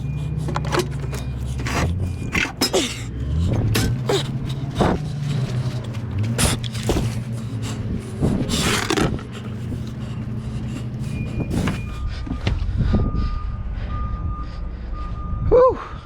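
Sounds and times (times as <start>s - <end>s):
reversing alarm beeping: 0.0s - 6.3s, 9.8s - 16.0s
engine running: 0.0s - 16.0s
knocks and clatter: 0.4s - 9.8s.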